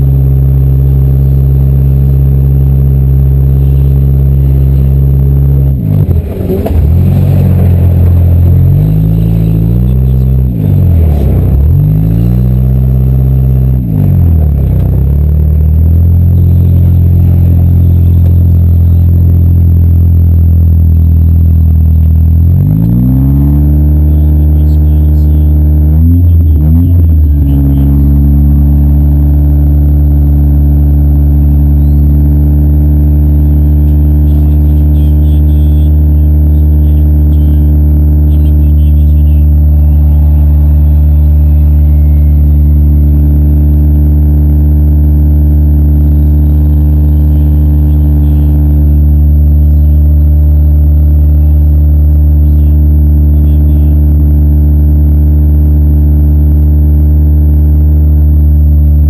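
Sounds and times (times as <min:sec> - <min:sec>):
car engine idling: 0:00.0 - 0:59.0.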